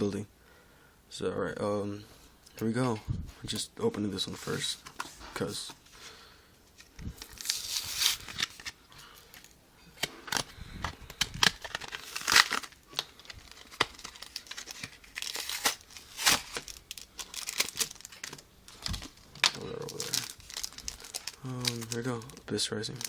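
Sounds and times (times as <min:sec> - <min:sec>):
foil wrapper crinkling: 0:06.8 - 0:23.0
foil wrapper ripping: 0:07.2 - 0:08.8, 0:10.2 - 0:23.0.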